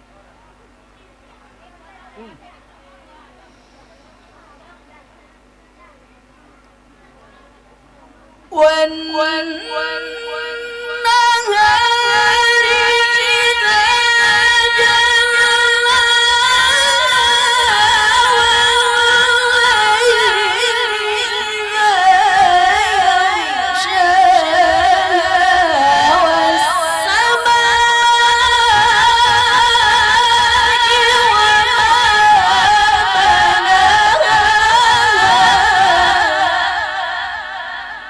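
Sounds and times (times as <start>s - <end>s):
woman reciting melodically: 8.4s - 38.0s.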